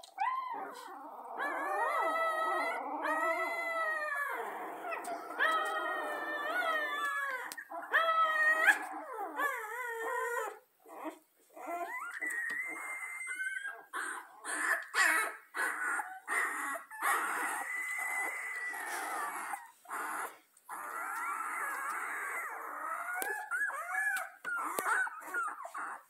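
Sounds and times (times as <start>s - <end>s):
puppies squealing and whining: 0.0s - 26.0s.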